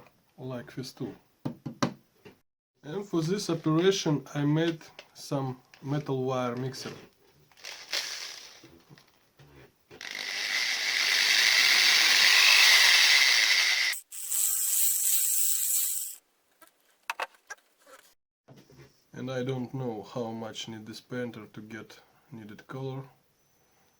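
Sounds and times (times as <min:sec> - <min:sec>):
drill spinning wire paint mixer: 0:10.0 - 0:16.2.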